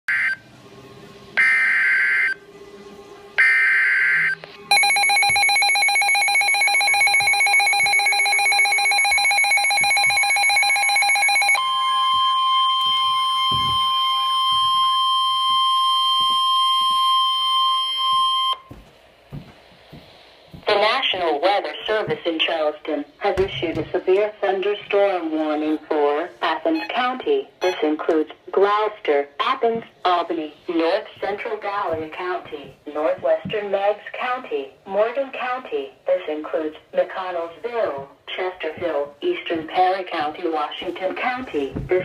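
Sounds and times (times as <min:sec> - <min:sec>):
steady warning tone: 0:03.4 - 0:18.7.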